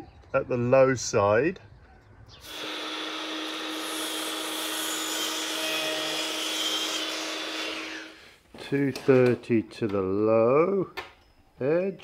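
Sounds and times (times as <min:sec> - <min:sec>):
electric power tool motor running: 0:02.4 - 0:08.2.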